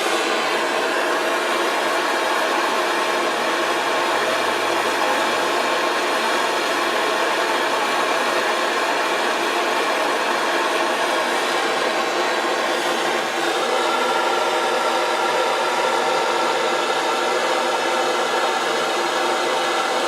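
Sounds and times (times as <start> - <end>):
torch flame hissing: 0.0 - 15.2.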